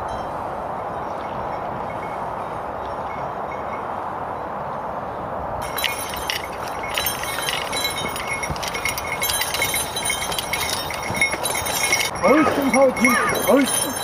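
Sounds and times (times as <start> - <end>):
steady rushing background noise: 2.4 - 14.0
harness chains jingling: 5.6 - 14.0.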